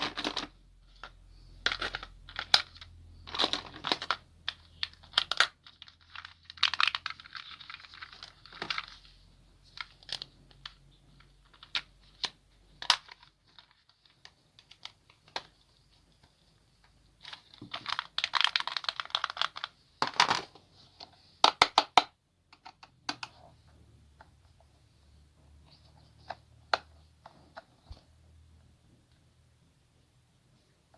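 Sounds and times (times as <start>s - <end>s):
packaging crinkling: 17.2s - 20.5s.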